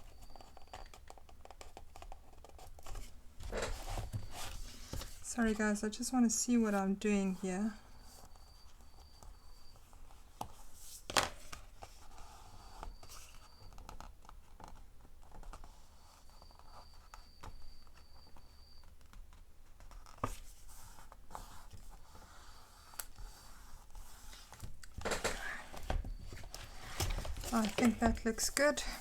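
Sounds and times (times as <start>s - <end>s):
paper rustling and scraping: 0.2s - 5.6s, 20.0s - 29.0s.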